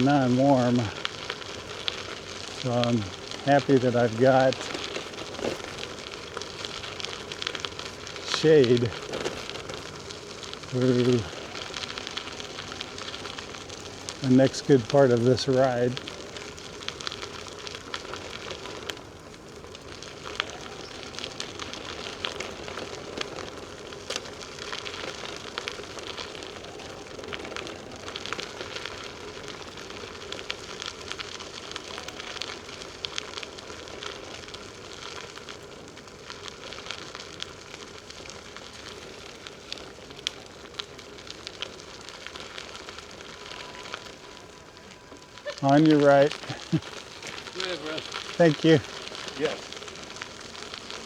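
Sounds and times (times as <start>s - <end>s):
bicycle tyres rolling on trail: 0.0s - 51.0s.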